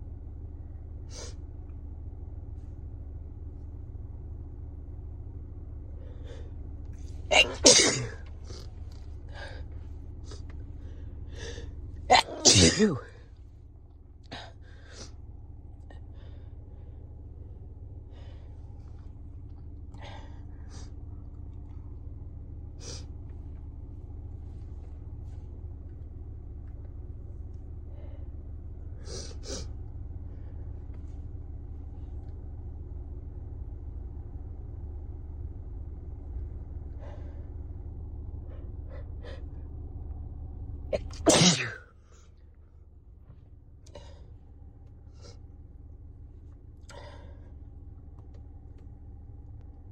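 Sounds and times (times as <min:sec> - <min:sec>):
low rumble inside car: 0:00.0 - 0:49.9
person sneezing: 0:07.3 - 0:08.3, 0:12.1 - 0:13.2, 0:41.0 - 0:41.9
person breathing: 0:46.9 - 0:47.6.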